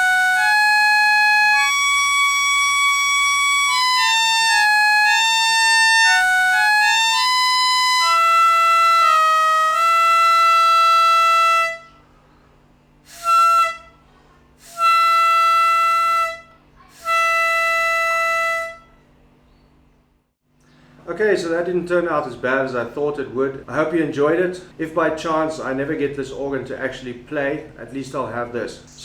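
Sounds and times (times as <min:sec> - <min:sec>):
reed organ notes: 0:00.0 - 0:11.8.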